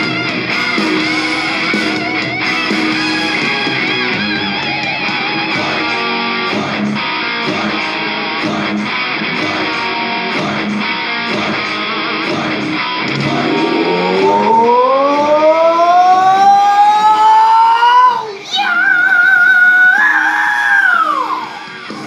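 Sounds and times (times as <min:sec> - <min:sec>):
strummed rhythm guitar: 0:00.0 - 0:14.4
bass guitar: 0:00.0 - 0:18.5
electric guitar lead with vibrato: 0:00.0 - 0:22.0.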